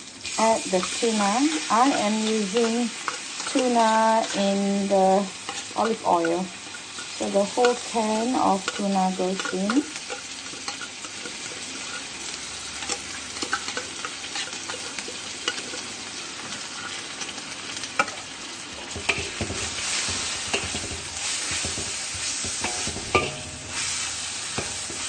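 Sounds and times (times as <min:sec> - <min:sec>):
food sizzling in oil: 0:00.0 - 0:25.0
utensil clicking against pan: 0:00.8 - 0:04.6, 0:05.5 - 0:11.5, 0:12.8 - 0:15.8.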